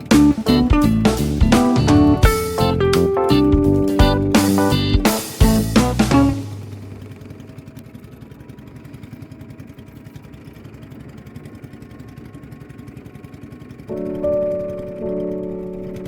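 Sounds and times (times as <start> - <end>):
small engine running: 0.0 - 2.8, 3.7 - 16.0
music: 0.0 - 6.6, 13.9 - 16.0.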